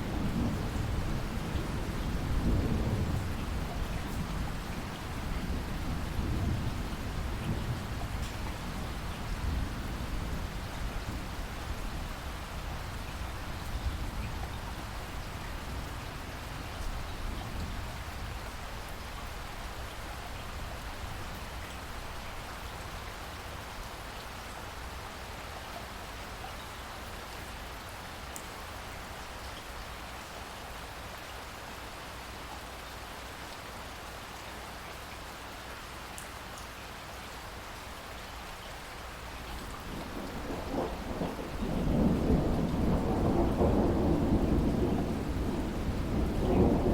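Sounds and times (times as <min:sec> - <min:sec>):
heavy rain: 0:00.0 - 0:46.9
thunder rumbling: 0:39.8 - 0:46.9.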